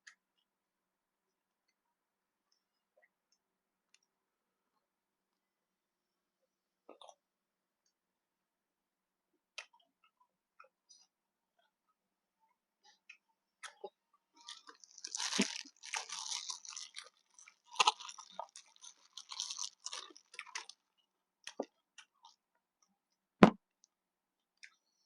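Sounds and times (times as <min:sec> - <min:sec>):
person chewing and crunching: 0:14.4 - 0:20.8.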